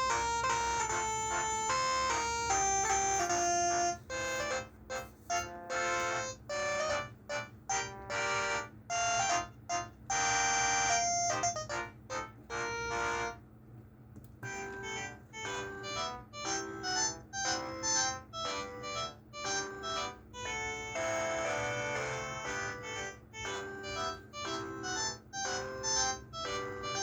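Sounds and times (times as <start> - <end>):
electronic ringtone melody: 0.0 - 13.4, 14.5 - 27.0
faint steady hum: 0.0 - 27.0.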